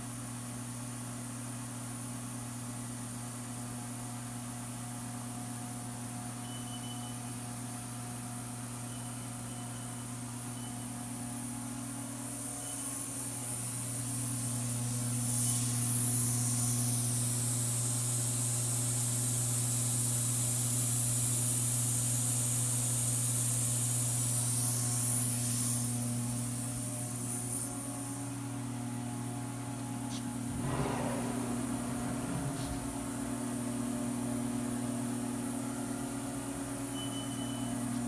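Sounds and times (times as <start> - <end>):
machining center humming: 30.4 - 33.9.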